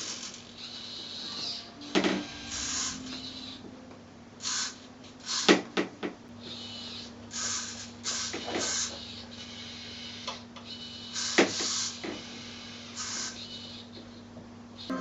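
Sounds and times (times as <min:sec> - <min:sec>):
whirring hissing bursts: 0:00.0 - 0:03.6, 0:04.4 - 0:05.6, 0:06.5 - 0:10.2, 0:10.9 - 0:13.8
low electrical hum: 0:00.0 - 0:15.0.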